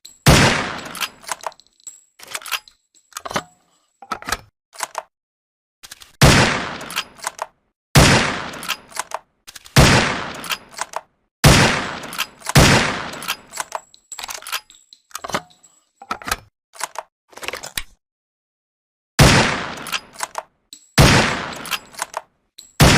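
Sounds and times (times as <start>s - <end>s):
metallic clicks: 0.0s - 5.1s, 6.8s - 7.6s, 8.5s - 9.8s, 10.4s - 11.1s, 12.0s - 18.0s, 19.8s - 22.8s
rifle gunshots with echo: 0.3s - 1.0s, 6.2s - 7.0s, 8.0s - 8.7s, 9.8s - 10.5s, 11.4s - 13.4s, 19.2s - 20.0s, 21.0s - 21.8s.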